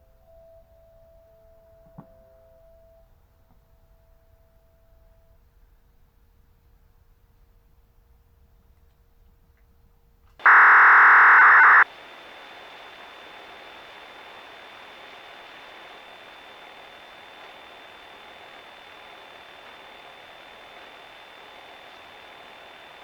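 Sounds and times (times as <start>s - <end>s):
loud radio static burst: 10.4s - 23.0s
steady hiss with high whine: 10.4s - 23.0s.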